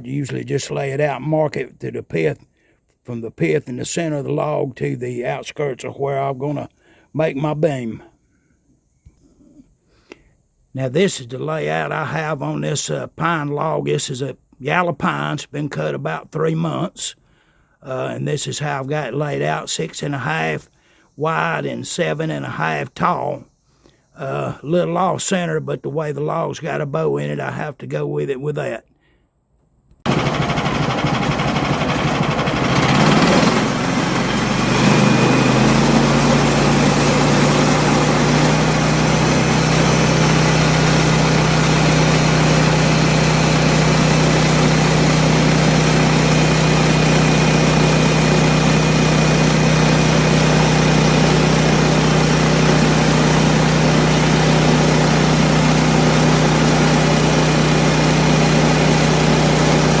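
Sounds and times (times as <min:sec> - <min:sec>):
sawmill engine running: 0:30.1 - 1:00.0.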